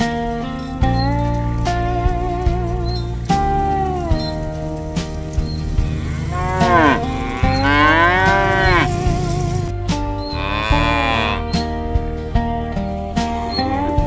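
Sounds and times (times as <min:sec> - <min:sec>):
guitar music: 0:00.0 - 0:14.0
cows mooing: 0:00.9 - 0:11.7.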